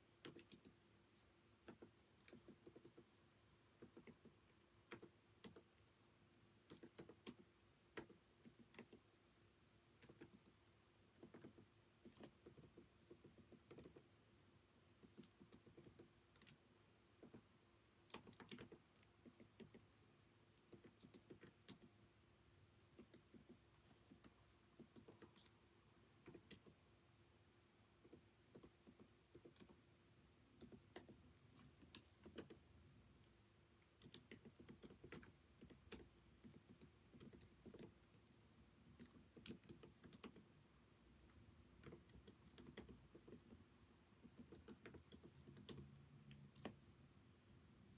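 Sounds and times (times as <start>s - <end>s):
typing on computer keyboard: 0.2s - 0.8s, 1.6s - 3.1s, 3.8s - 5.7s, 6.6s - 9.0s, 10.0s - 10.6s, 11.2s - 14.1s, 15.0s - 16.6s, 18.1s - 19.8s, 20.6s - 21.9s, 23.0s - 25.6s, 26.2s - 26.8s, 28.0s - 29.8s, 30.6s - 31.2s, 31.8s - 32.6s, 34.0s - 38.3s, 39.0s - 40.5s, 41.8s - 43.6s, 44.2s - 45.9s.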